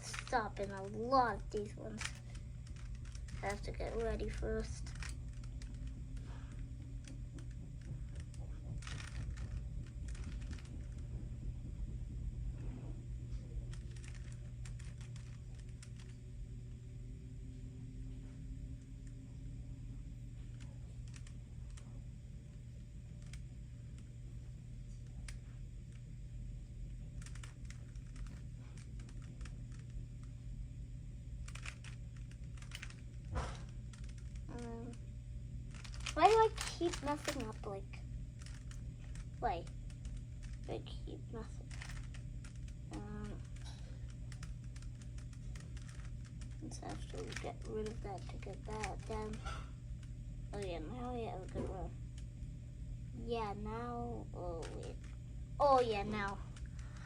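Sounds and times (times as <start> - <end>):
low hum: 0.0 - 57.0.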